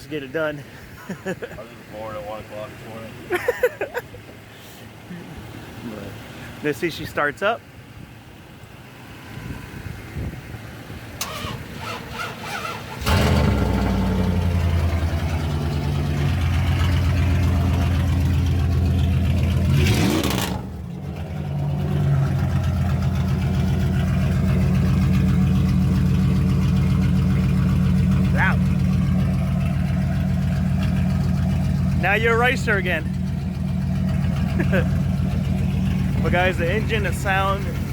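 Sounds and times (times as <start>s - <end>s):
loud engine idling and revving: 4.9s - 37.9s
truck engine cranking and starting: 9.4s - 37.9s.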